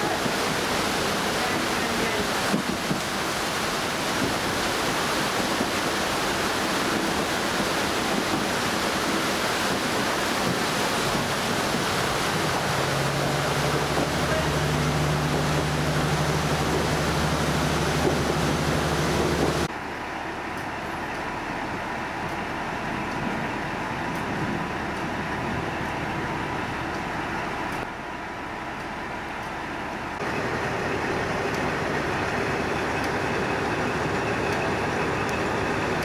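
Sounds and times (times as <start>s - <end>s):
wind noise: 0.0s - 19.7s
heavy rain: 0.0s - 19.8s, 30.1s - 36.0s
railcar engine humming: 0.0s - 36.0s.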